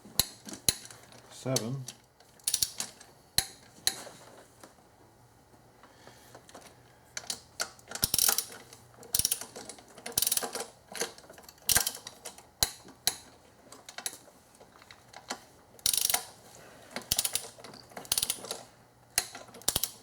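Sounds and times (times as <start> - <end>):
hand ratchet clicking: 2.4 - 3.5, 7.2 - 10.7, 11.6 - 13.2, 15.8 - 16.3, 17.1 - 18.6, 19.2 - 20.0.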